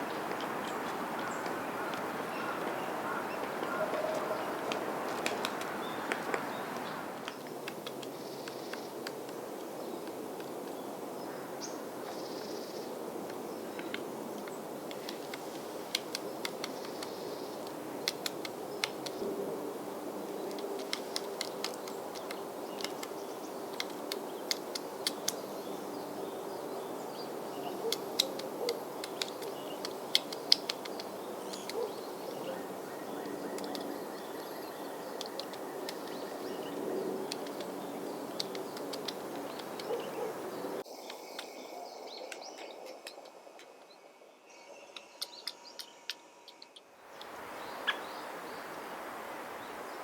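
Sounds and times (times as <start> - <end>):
woodpecker short sharp sounds: 0.2 - 9.4.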